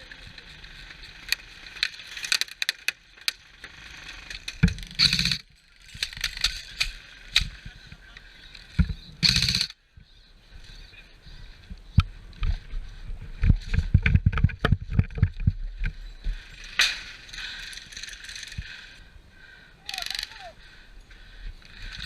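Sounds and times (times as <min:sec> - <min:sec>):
airsoft gun rapid bursts: 0:04.9 - 0:05.4, 0:09.2 - 0:09.7.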